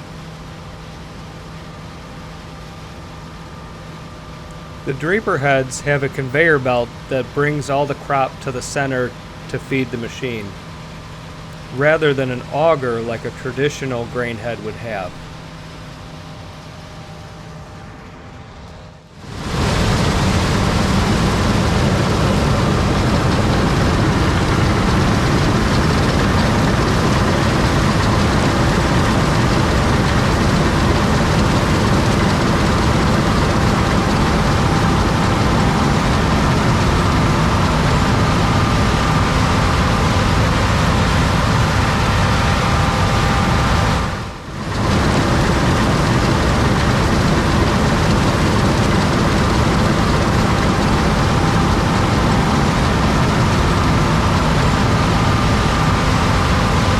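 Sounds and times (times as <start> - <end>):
combine harvester running: 4.0 - 56.9
faint steady tones: 4.4 - 18.1.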